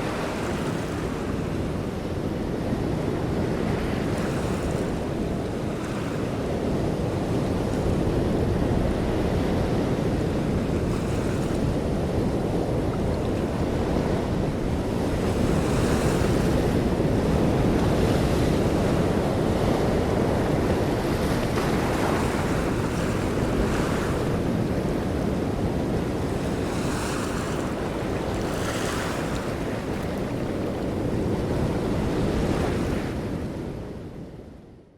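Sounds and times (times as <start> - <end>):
wind buffeting microphone: 0.0 - 34.7
sea waves splashing: 7.8 - 33.5.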